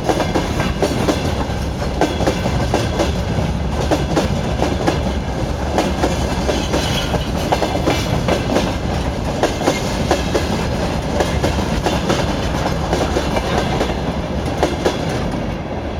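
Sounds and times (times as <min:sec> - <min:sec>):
train wheels clacking over rail joints: 0:00.0 - 0:15.6
train rumble: 0:00.0 - 0:15.9.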